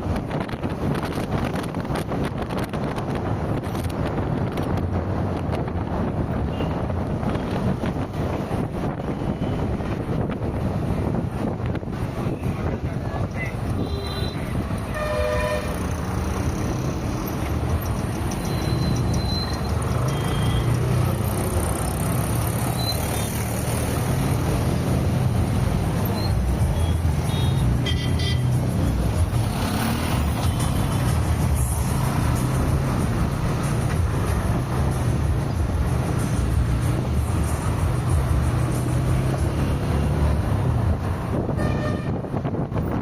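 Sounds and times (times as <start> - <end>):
engine and road rumble: 0.0 - 43.0
car horn toots: 13.8 - 15.8, 26.8 - 28.5.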